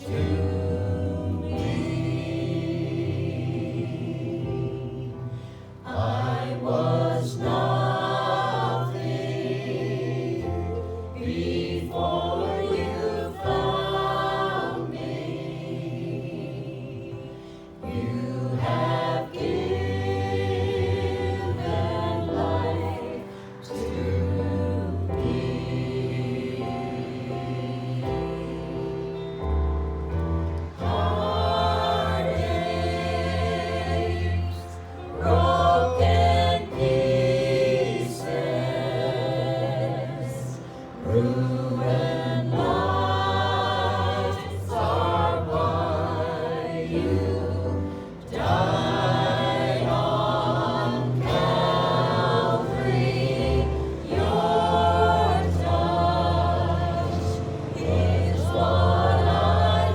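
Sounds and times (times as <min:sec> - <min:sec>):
choir singing gospel: 0:00.0 - 0:59.9.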